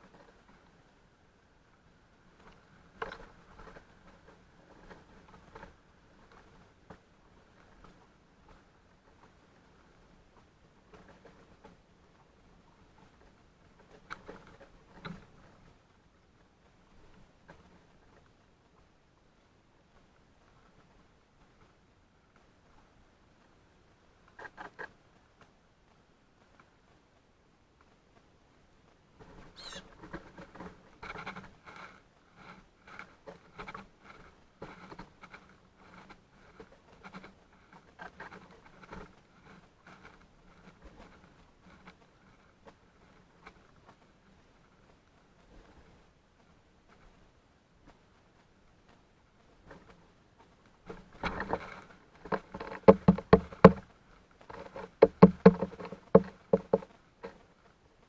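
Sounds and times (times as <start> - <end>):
birds pecking seed: 29.2 - 35.9
birds pecking on a feeder: 29.5 - 31.5, 52.2 - 53.9
bird chirp: 29.6 - 29.9.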